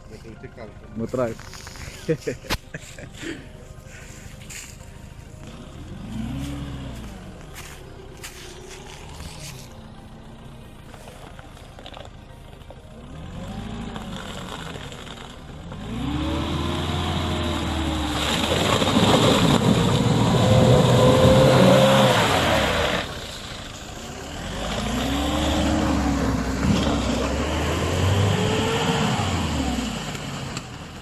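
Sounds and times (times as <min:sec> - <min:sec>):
car engine revving: 0:05.2 - 0:31.0.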